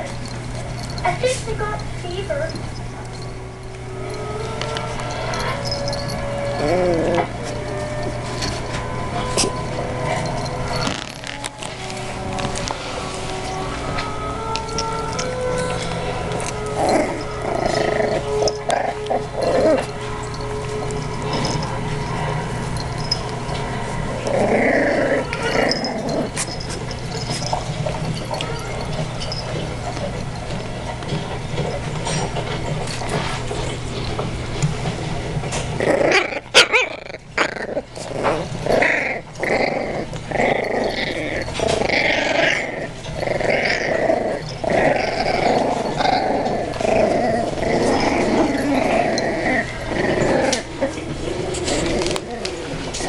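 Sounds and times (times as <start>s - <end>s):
puppies growling and yapping: 0.0s - 53.0s.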